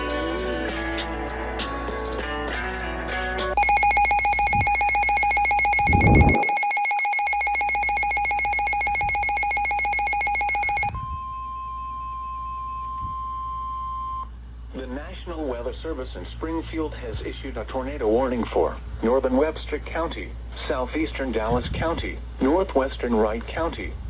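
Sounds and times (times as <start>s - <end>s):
buzzing electronic alarm tone: 3.6s - 10.9s
steady pure alarm tone: 3.6s - 10.9s.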